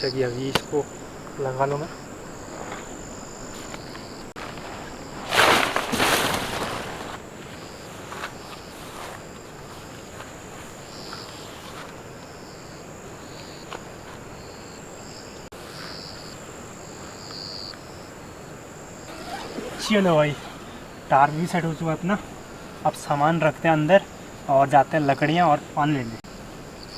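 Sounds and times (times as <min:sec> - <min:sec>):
insects trilling: 0:00.0 - 0:26.9
rustling: 0:01.9 - 0:12.0, 0:19.0 - 0:22.8.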